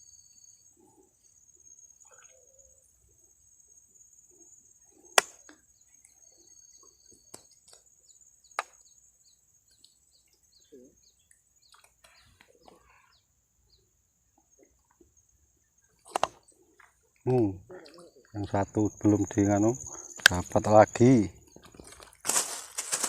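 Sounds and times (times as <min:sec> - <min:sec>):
high insect buzz: 0:17.3 - 0:23.0.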